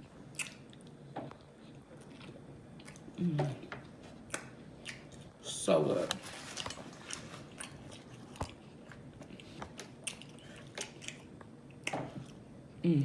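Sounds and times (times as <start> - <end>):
person chewing food: 0.1 - 5.4, 6.6 - 12.6.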